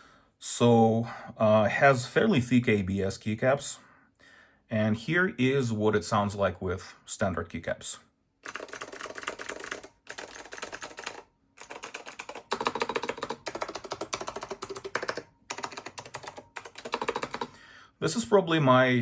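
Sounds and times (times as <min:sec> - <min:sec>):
typing on a keyboard: 0:08.4 - 0:17.6.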